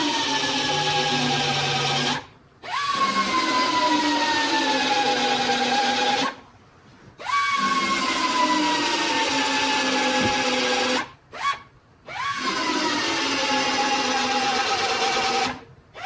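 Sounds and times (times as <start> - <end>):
power tool motor whine: 0.0 - 6.4.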